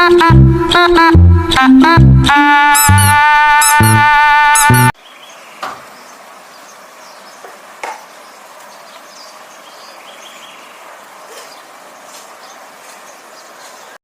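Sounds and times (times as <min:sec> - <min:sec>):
background music: 0:00.0 - 0:04.9
low background noise: 0:05.0 - 0:14.0.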